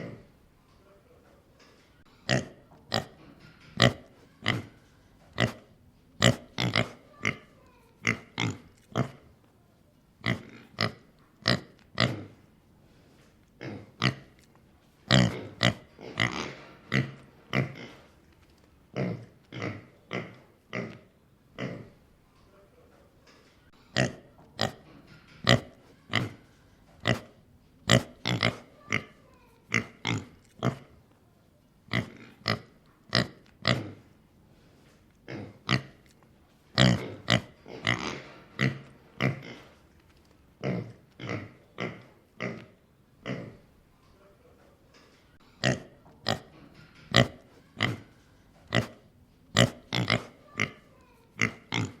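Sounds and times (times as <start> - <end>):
pig snorting and grunting: 2.2 - 9.3, 10.2 - 12.5, 13.6 - 14.4, 15.1 - 18.1, 18.9 - 22.0, 23.9 - 31.0, 31.9 - 34.1, 35.2 - 36.1, 36.7 - 39.8, 40.6 - 43.7, 45.6 - 52.0.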